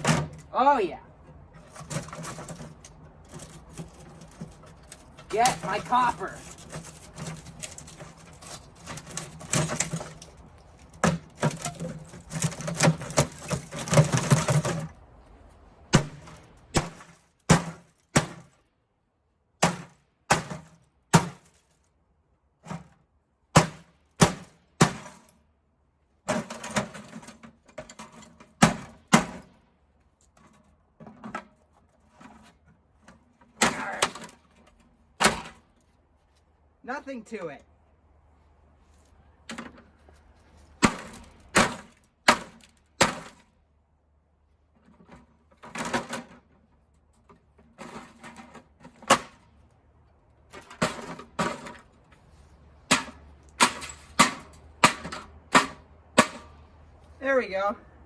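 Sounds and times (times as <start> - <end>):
monitor being broken apart: 1.7 - 14.9.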